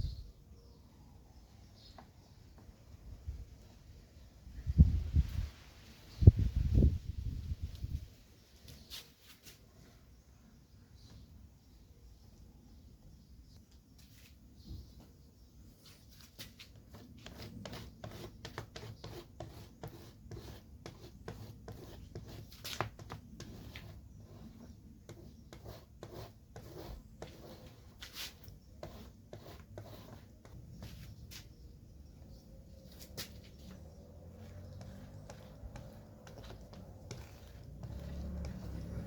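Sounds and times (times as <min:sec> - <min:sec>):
rapid scraping strokes: 0:16.8 - 0:31.1, 0:32.9 - 0:39.0.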